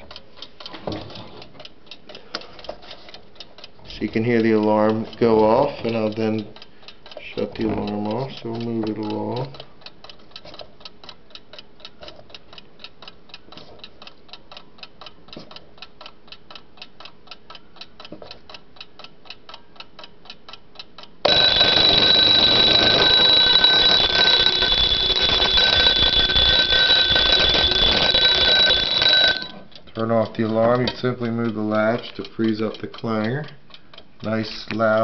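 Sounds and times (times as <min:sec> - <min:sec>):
alarm clock ticking: 0:01.6 - 0:33.6
alarm bell ringing: 0:21.3 - 0:29.6.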